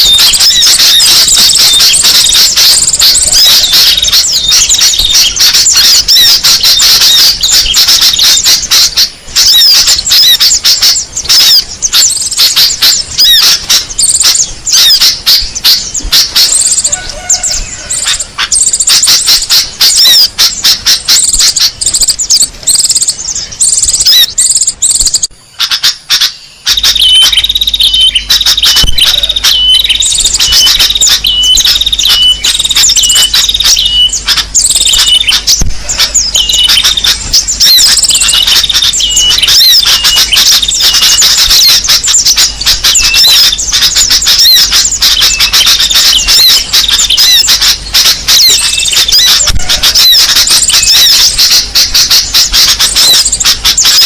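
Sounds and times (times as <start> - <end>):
songbirds chirping: 0.0 - 54.0.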